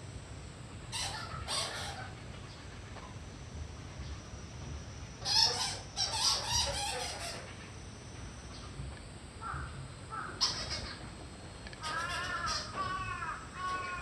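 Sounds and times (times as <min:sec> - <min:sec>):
harsh bird calls: 0:00.9 - 0:02.2, 0:05.2 - 0:07.5, 0:09.4 - 0:11.0, 0:11.8 - 0:14.0.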